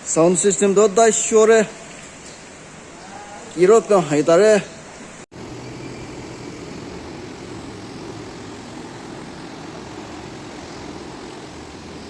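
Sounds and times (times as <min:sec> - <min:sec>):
rushing flooded river: 0:05.4 - 0:12.0.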